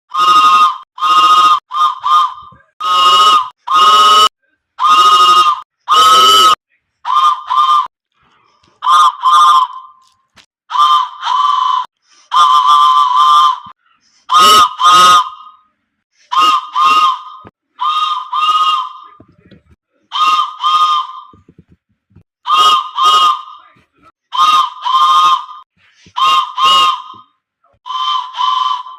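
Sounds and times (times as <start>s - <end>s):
whistle toots: 0.1s - 7.9s, 8.7s - 19.4s, 24.3s - 28.9s.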